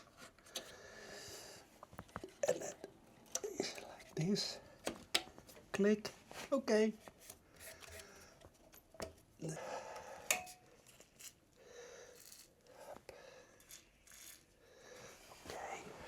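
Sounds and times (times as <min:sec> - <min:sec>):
clicks and taps of handled parts: 0:04.8 - 0:05.6.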